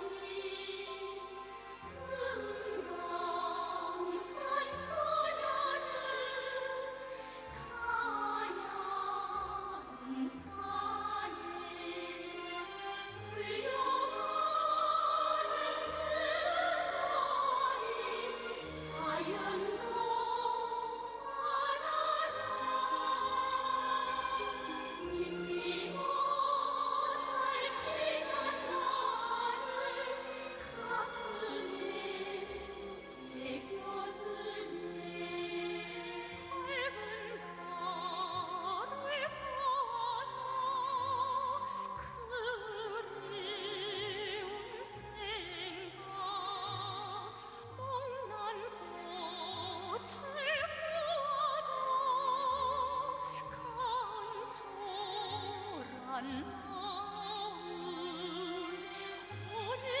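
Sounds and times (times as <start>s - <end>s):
orchestral accompaniment: 0.0s - 41.6s.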